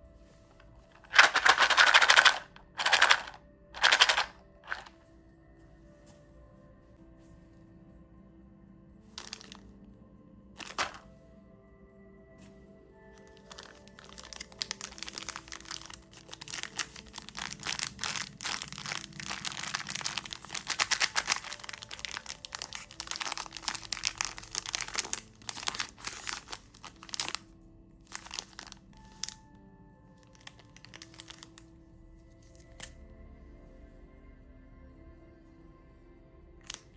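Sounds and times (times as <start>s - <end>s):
candy wrapper crinkling: 0.9s - 4.9s, 9.2s - 9.6s, 10.6s - 11.0s, 13.2s - 27.5s, 28.1s - 29.4s, 30.2s - 31.6s.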